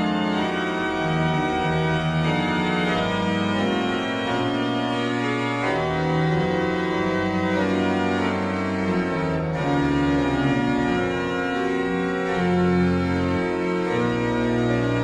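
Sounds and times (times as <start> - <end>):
organ playing slow chords: 0.0 - 15.0.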